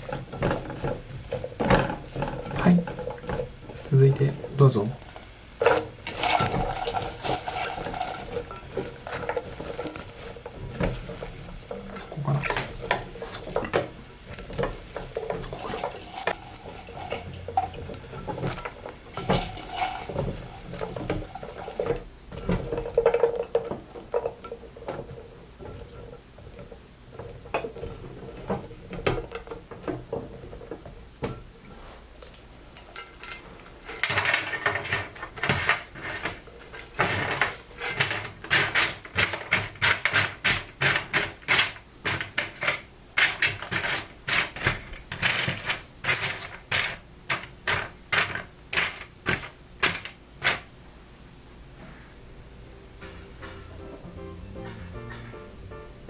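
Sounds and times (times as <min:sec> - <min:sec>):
popcorn clicking and rattling: 0:00.0 - 0:31.4, 0:32.1 - 0:50.7.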